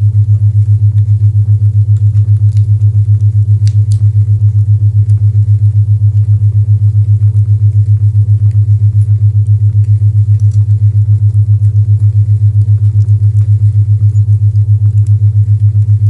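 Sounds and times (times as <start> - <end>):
low pulsing hum tone: 0.0 - 16.0
fireplace crackles: 3.6 - 4.0.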